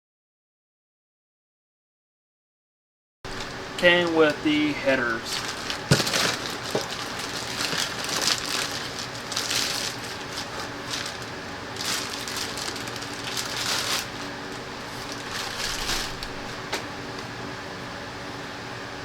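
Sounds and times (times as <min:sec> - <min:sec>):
packing material rustling: 0:03.3 - 0:16.8.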